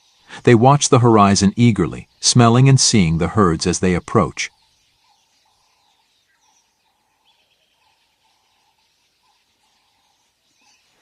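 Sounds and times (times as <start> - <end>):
soft bird chirps: 0.0 - 0.4, 1.9 - 11.0.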